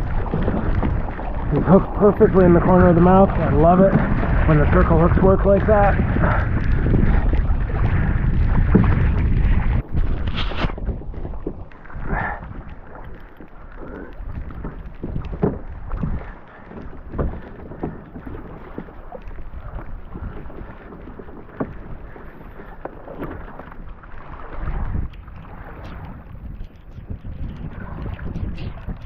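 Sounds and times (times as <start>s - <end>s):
water splashing against hull: 0.0s - 29.0s
wind buffeting microphone: 0.0s - 29.0s.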